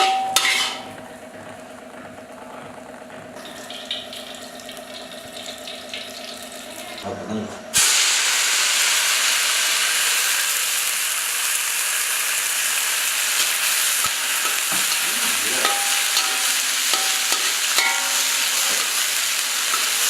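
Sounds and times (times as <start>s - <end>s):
food sizzling in hot oil: 3.4s - 7.0s, 7.8s - 20.0s.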